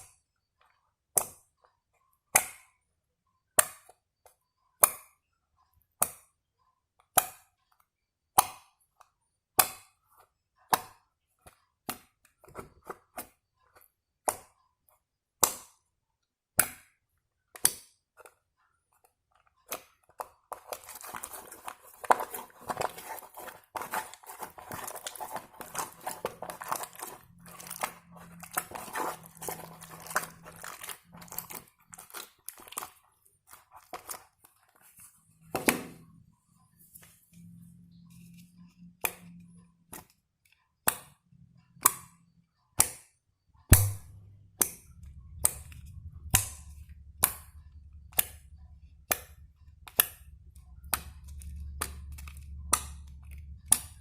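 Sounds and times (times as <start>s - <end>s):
squishy crackling and clicking: 17.5s - 35.6s, 43.7s - 54.0s
slime popping: 20.2s - 34.2s.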